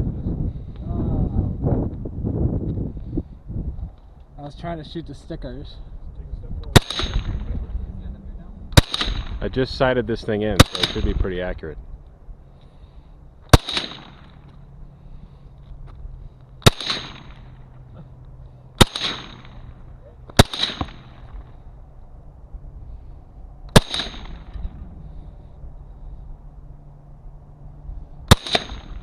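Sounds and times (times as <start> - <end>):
gunshots with ringing: 6.7 - 7.5, 8.8 - 9.5, 10.6 - 11.2, 13.5 - 14.4, 16.6 - 17.6, 18.8 - 19.7, 20.4 - 21.3, 23.7 - 24.6, 28.3 - 29.0.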